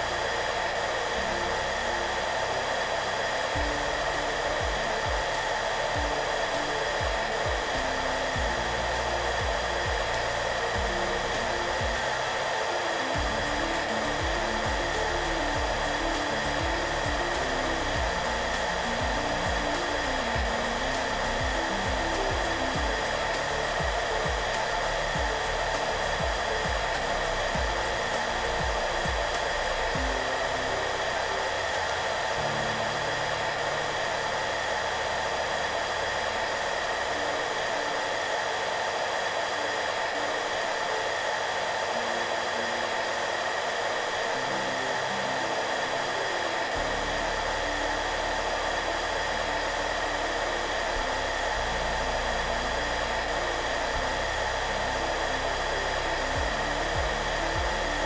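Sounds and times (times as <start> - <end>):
hair dryer blowing: 0.0 - 58.0
soft background music: 0.0 - 58.0.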